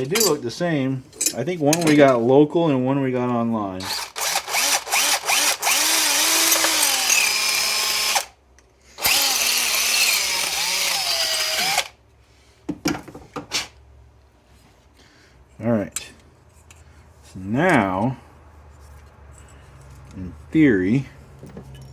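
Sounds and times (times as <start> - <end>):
electric drill drilling metal: 3.8 - 8.3, 9.0 - 12.0.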